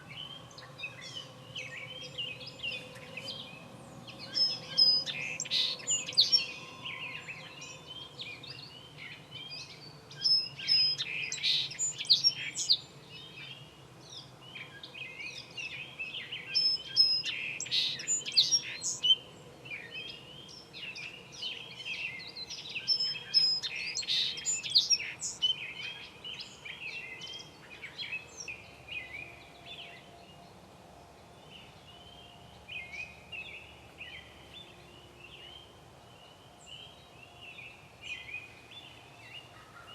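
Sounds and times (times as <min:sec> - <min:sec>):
bird chirps: 0:00.0 - 0:12.8
songbird singing: 0:00.0 - 0:39.9.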